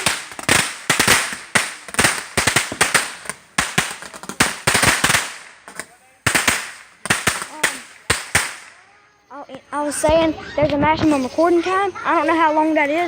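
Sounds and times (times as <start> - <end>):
fireworks bangs and crackles: 0.0 - 8.9.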